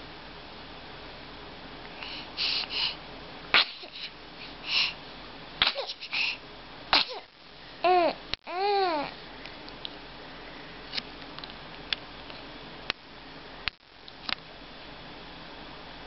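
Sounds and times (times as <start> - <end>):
person sneezing: 3.6 - 4.1, 5.6 - 6.3, 6.9 - 7.3.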